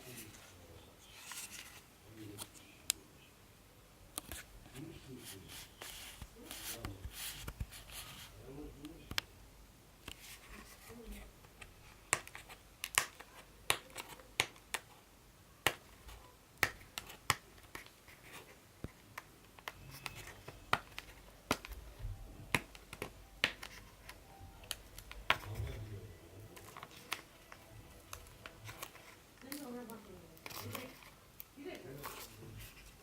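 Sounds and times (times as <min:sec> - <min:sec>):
scratching: 0:16.0 - 0:33.0.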